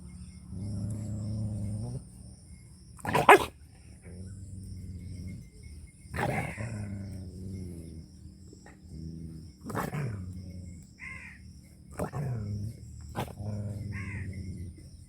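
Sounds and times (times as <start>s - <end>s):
dog growling: 0.0s - 2.4s, 3.0s - 15.0s
dog barking: 3.0s - 3.6s.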